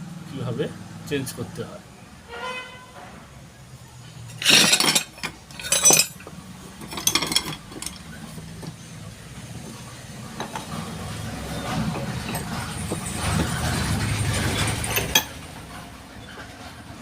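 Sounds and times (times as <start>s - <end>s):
metal clinking and clattering: 4.3s - 15.6s.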